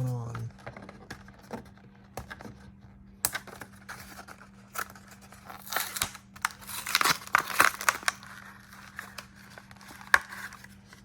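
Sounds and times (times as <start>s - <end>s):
wrapper crinkling and tearing: 3.8s - 11.0s.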